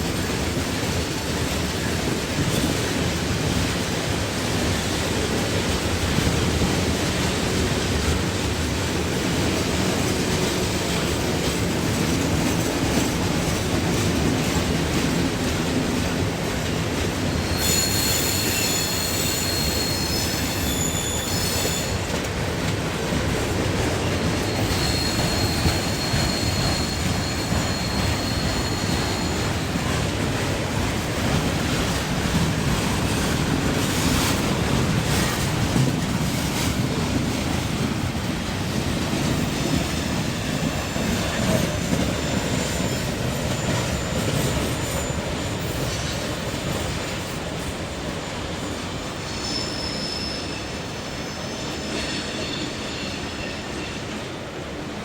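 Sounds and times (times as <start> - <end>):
train wheels rumbling on rail: 0.0 - 55.0
high-pitched wheel squeal: 17.4 - 22.1, 24.4 - 29.7, 40.5 - 46.2, 49.1 - 53.6.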